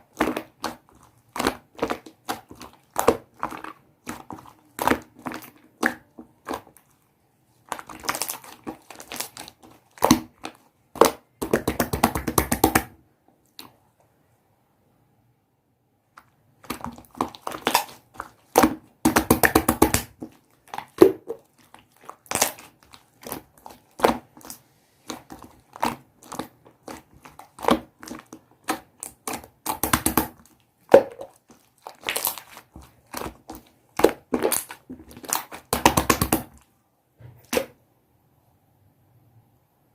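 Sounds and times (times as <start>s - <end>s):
slime squeezed by hand crackling: 16.6s - 36.6s.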